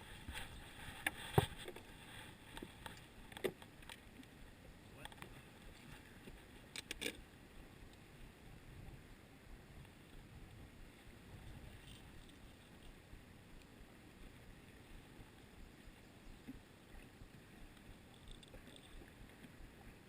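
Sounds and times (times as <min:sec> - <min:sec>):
faint ticks: 0:11.7 - 0:19.9.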